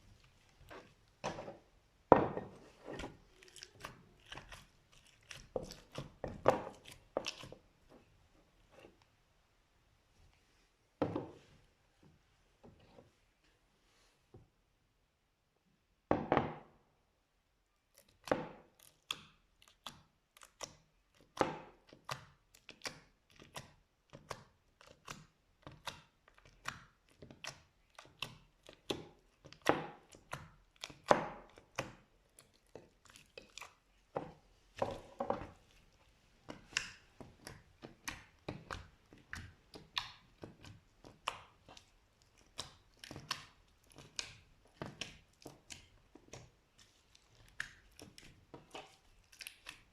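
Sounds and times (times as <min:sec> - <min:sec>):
sticky slime crackles and pops: 0:03.1 - 0:07.6, 0:17.9 - 0:33.9, 0:36.4 - 0:49.9.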